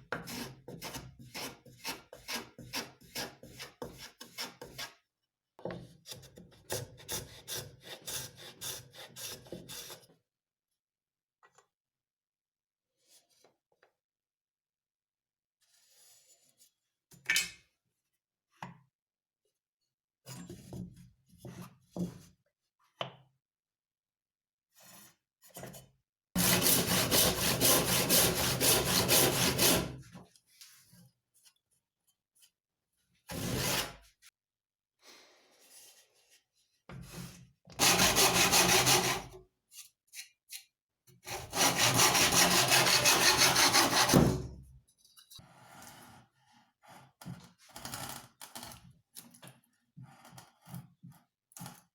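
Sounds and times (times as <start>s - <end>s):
saw cutting wood: 26.4s - 30.0s, 37.8s - 39.3s, 41.3s - 44.4s.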